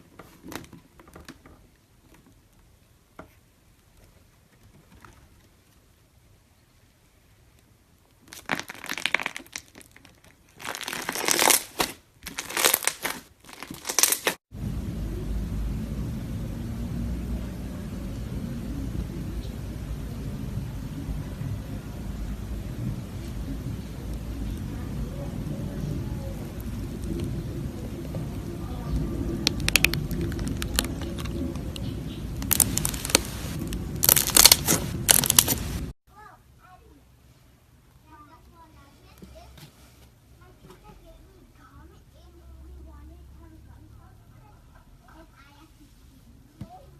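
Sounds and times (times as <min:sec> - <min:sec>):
slime crackling and popping: 0:08.2 - 0:14.4, 0:29.0 - 0:35.9
low steady rumble: 0:14.5 - 0:36.0.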